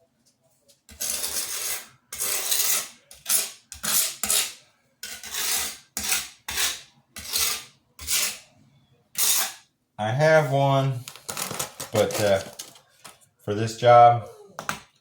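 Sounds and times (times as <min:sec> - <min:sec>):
hand tool scraping grout: 0:00.9 - 0:08.5, 0:09.2 - 0:09.6, 0:11.1 - 0:12.7.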